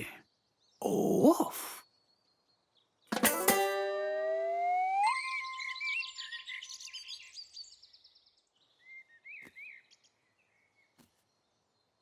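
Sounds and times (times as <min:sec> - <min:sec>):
cartoon bird chirps: 0:03.8 - 0:06.5.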